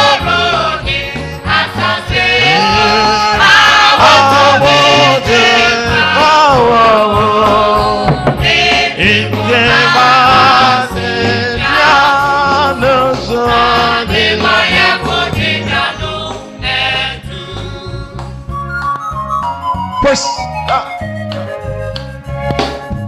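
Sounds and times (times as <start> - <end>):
choir singing gospel music: 0.0 - 18.8.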